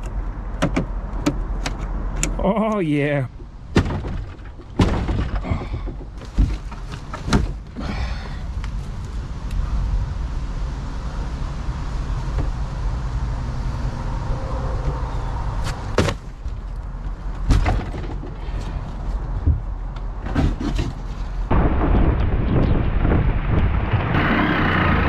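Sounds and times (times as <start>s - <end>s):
sharp knocks and clunks: 0.6s - 2.4s, 3.3s - 7.8s, 15.6s - 16.7s, 17.3s - 18.8s, 19.4s - 21.1s
steady low rumble: 7.5s - 17.6s, 21.4s - 25.0s.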